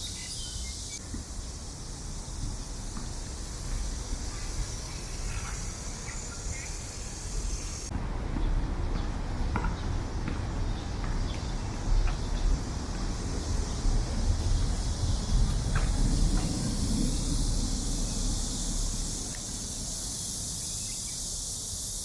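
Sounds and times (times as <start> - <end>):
steady high hiss: 0.0 - 22.0
low rumble: 11.6 - 20.0.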